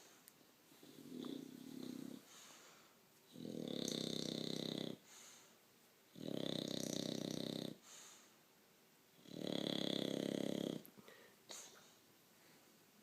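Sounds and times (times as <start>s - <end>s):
dog snoring: 0.7s - 2.3s, 3.3s - 5.1s, 6.1s - 7.9s, 9.2s - 10.9s.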